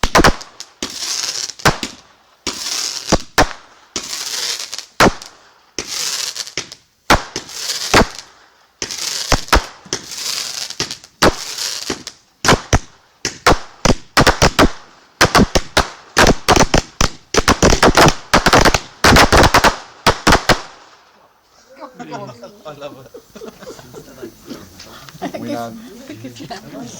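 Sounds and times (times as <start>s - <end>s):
fireworks bangs: 0.0s - 21.4s
fireworks hissing crackle: 0.0s - 26.9s.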